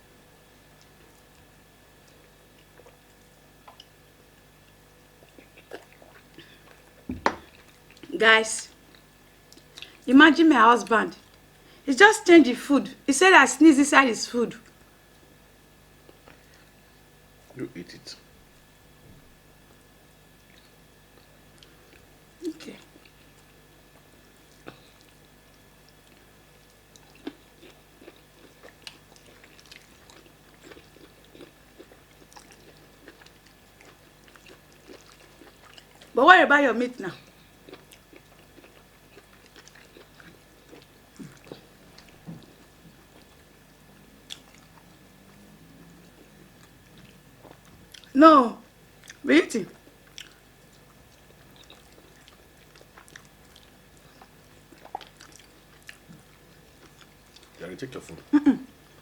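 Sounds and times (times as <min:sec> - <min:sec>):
steady low hum: 0:00.0 - 0:59.0
wet chewing and lip smacks: 0:00.7 - 0:04.0, 0:04.6 - 0:08.1, 0:08.9 - 0:10.0, 0:20.4 - 0:22.1, 0:22.8 - 0:36.2, 0:37.2 - 0:48.2, 0:49.0 - 0:57.6.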